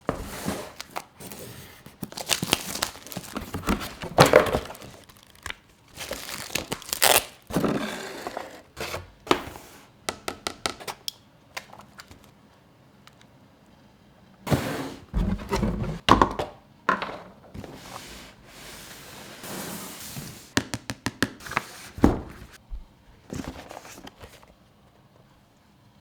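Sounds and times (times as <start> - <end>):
packaging tearing and crinkling: 0.8 - 7.6.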